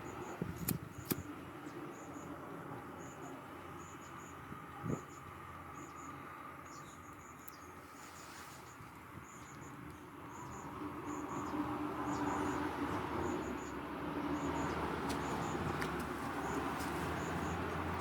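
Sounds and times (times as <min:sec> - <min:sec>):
insects chirping: 0:00.0 - 0:18.0
faint fire crackles: 0:14.8 - 0:18.0.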